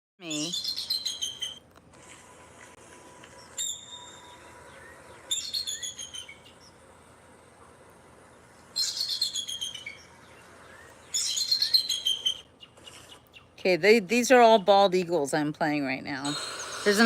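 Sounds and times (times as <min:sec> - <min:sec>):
rapid high chittering: 0:16.3 - 0:17.0.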